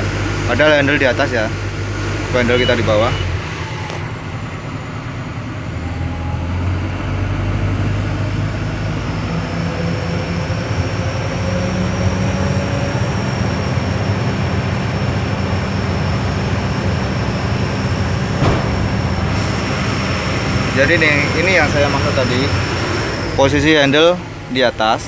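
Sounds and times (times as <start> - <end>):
excavator diesel engine: 0.0 - 25.0
faint rising whine: 0.0 - 25.0.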